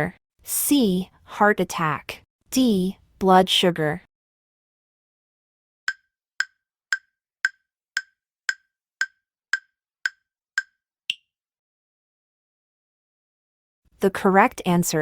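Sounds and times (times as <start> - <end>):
wood-block ticks: 5.9 - 11.3.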